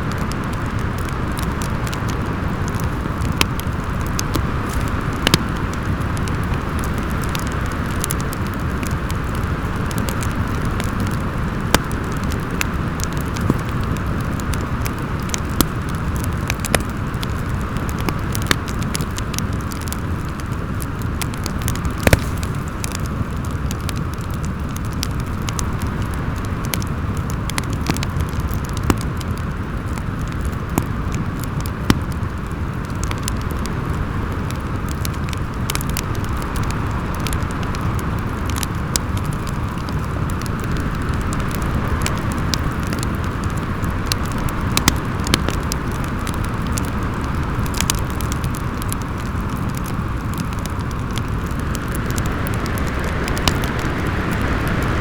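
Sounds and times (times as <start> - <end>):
wind howling: 0.0 - 18.4, 19.6 - 28.8, 39.6 - 55.0
fire popping: 0.0 - 55.0
wood fire crackling: 0.0 - 55.0.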